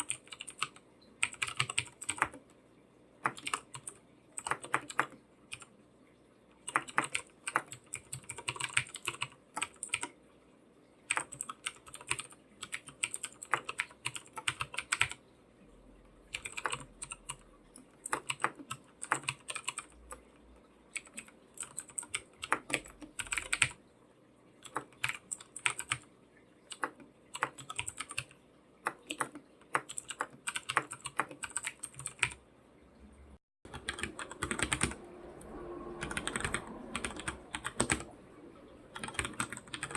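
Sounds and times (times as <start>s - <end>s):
typing on computer keyboard: 0.0s - 2.4s, 3.2s - 5.7s, 6.6s - 10.2s, 11.1s - 15.2s, 16.3s - 20.3s, 20.9s - 23.8s, 24.6s - 26.1s, 26.7s - 32.4s, 33.7s - 35.0s, 36.0s - 38.1s, 38.9s - 39.9s.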